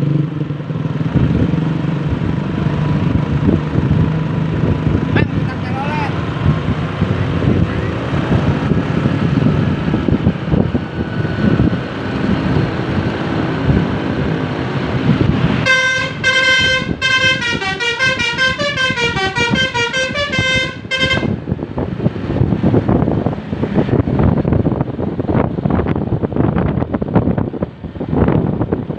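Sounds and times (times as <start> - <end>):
traffic road and wind rumble: 0.0 - 28.9
multi-trumpet bus horn tune: 15.6 - 21.4.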